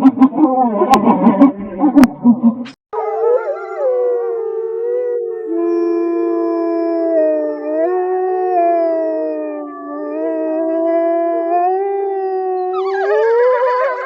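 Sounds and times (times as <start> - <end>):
wolves howling: 3.0 - 14.0.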